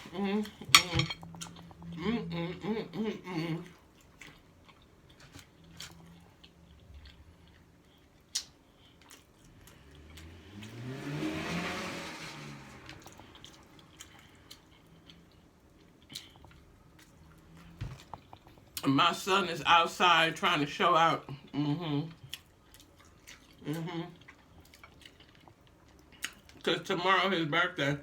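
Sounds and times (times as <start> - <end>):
quiet chewing clicks: 3.6 - 10.7, 13.0 - 18.9, 22.1 - 26.7
vehicle passing outside: 9.5 - 14.6.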